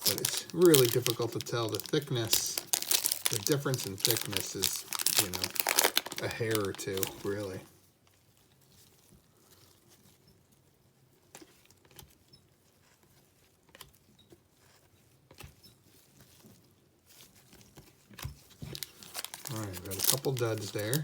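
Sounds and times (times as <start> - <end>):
trading cards being handled: 0.0 - 7.6, 18.6 - 21.0
low room hum: 0.0 - 7.7.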